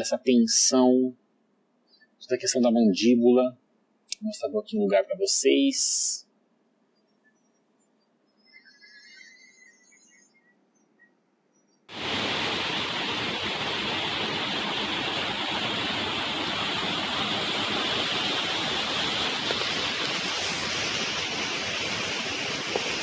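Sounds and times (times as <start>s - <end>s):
river water rushing over rocks: 11.9s - 23.0s.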